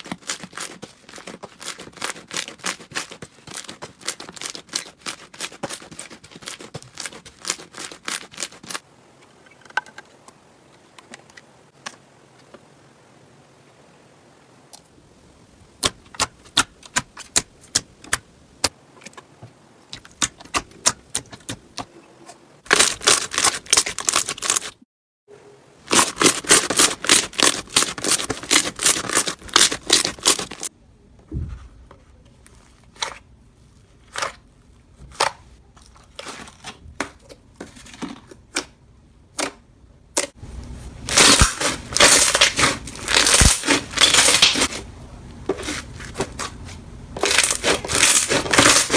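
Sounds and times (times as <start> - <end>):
slime crackling and popping: 41.0 - 44.8, 47.2 - 48.9.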